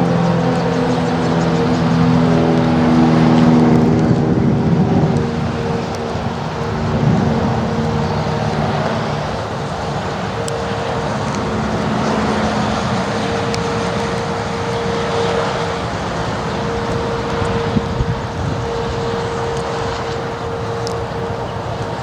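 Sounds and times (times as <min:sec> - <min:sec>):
distant warning sirens: 0:00.0 - 0:22.0.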